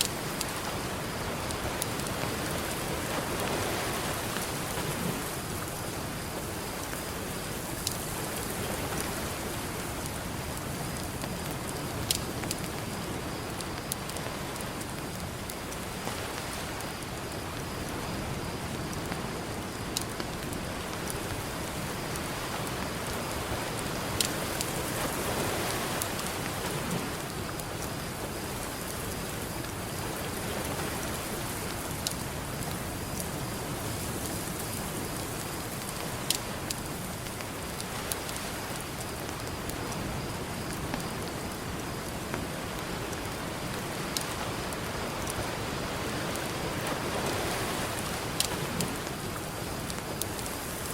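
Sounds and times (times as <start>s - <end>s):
ocean surf: 0.0s - 12.9s, 20.2s - 32.8s, 41.6s - 50.9s
crackling campfire: 0.0s - 50.9s.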